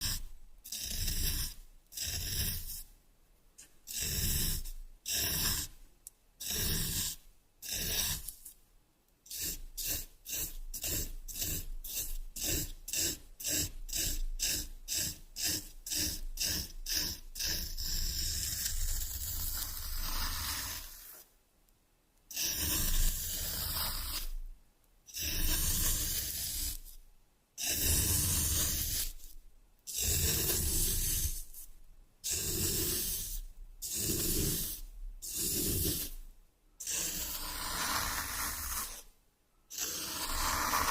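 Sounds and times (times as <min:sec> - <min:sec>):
sand being scraped: 0:00.0 - 0:02.9, 0:09.3 - 0:21.3, 0:22.3 - 0:24.4, 0:25.2 - 0:26.9, 0:27.7 - 0:29.3, 0:30.0 - 0:31.7, 0:32.4 - 0:36.2, 0:36.8 - 0:39.1, 0:39.7 - 0:40.9.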